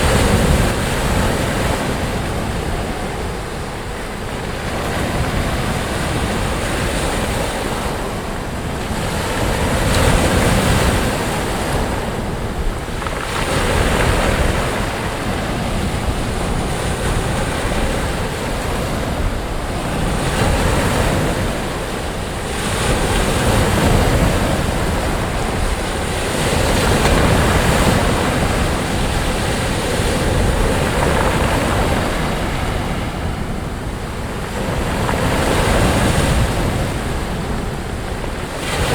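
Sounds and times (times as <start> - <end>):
surf breaking on beach: 0.0 - 38.9.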